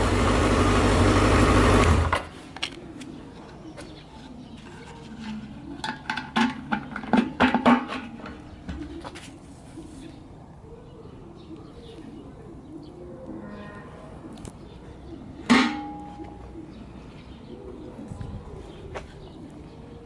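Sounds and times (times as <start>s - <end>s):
doves cooing: 1.6s - 20.0s
sharp metal clank: 15.5s - 16.2s.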